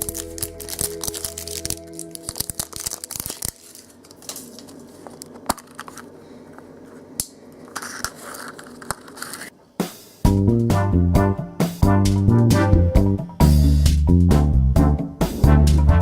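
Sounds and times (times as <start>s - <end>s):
foil wrapper crinkling and tearing: 0.0s - 6.0s, 7.8s - 9.5s.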